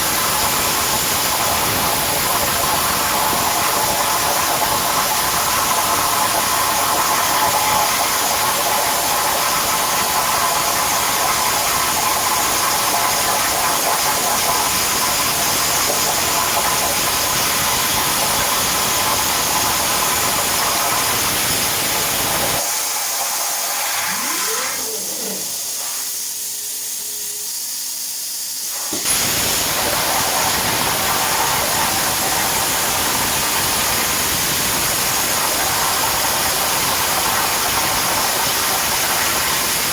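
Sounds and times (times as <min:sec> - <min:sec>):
plasma torch hissing: 0:20.8 - 0:37.0.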